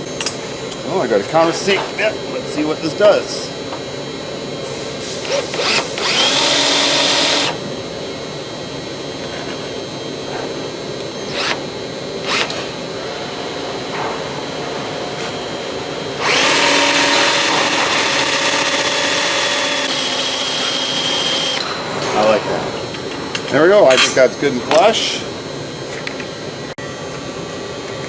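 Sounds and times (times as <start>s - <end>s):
shop noise: 0.0s - 28.0s
power drill whining into steel: 5.2s - 7.7s, 11.2s - 13.2s, 16.0s - 22.4s.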